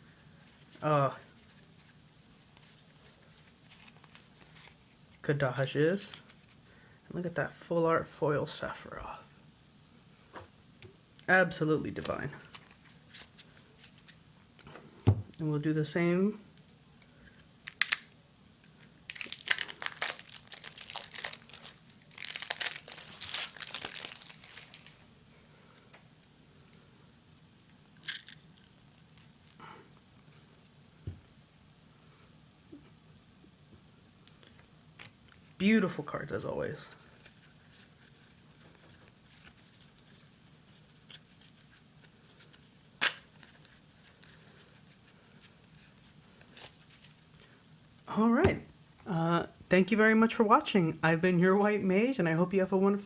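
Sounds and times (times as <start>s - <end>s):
plastic wrapping torn and crinkled: 17.6s - 18.2s, 19.1s - 25.0s, 28.0s - 29.6s.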